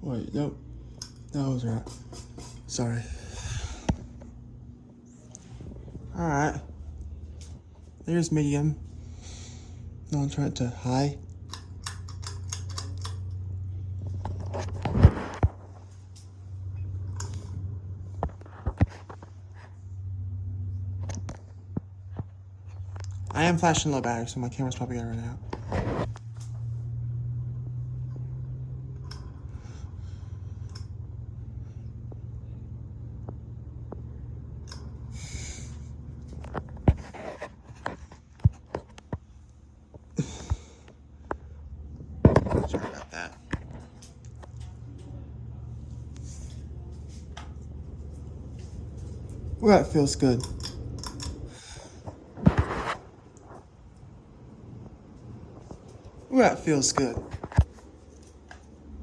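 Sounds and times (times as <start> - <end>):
ceiling fan humming: 0.0 - 59.0
handling clicks and knocks: 11.4 - 13.4.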